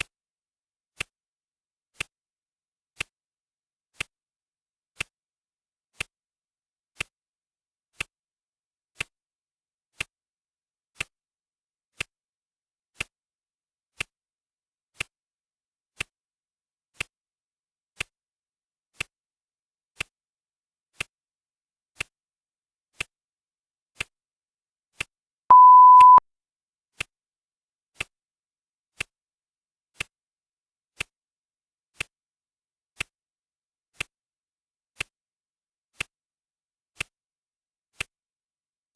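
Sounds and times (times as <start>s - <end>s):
high timer beep: 25.5s - 26.2s.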